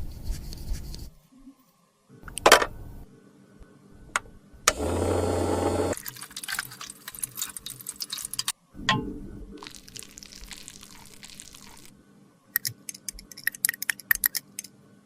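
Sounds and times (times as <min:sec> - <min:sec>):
low hum: 0:08.7 - 0:09.6.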